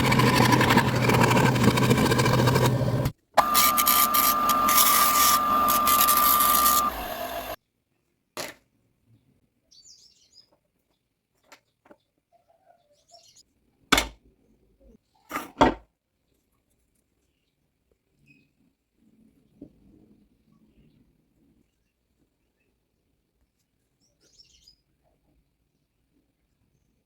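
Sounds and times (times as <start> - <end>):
power tool motor whining: 0.0 - 7.6.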